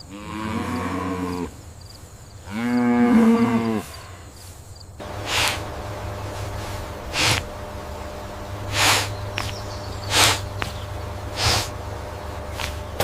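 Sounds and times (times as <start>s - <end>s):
cow mooing: 0.1s - 1.5s, 2.5s - 3.9s
breathy bursts of exhaled air: 5.0s - 13.0s
steady low hum: 5.0s - 13.0s.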